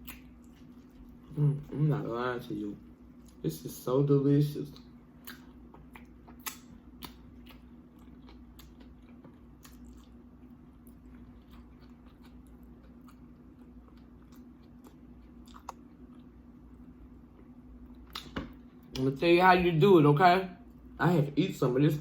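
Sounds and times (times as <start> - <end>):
faint steady hum: 0.0 - 22.0
chewing crunchy chips: 4.7 - 16.4.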